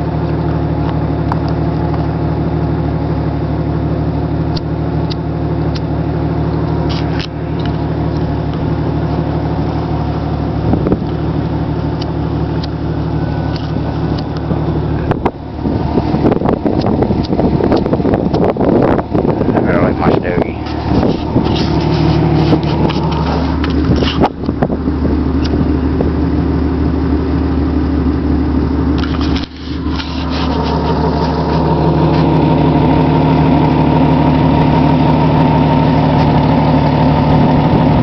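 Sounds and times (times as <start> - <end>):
car engine idling: 0.0 - 38.0
rough uneven rustling: 6.6 - 25.7, 28.9 - 38.0.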